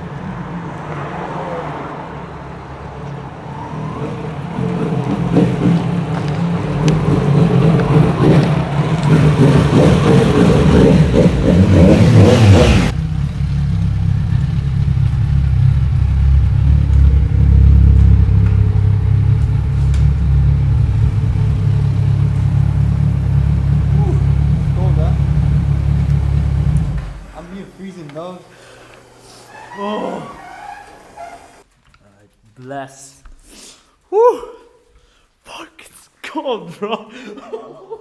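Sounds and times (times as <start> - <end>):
low engine drone: 3.2 - 31.6
motorcycle engine revving: 3.8 - 28.1.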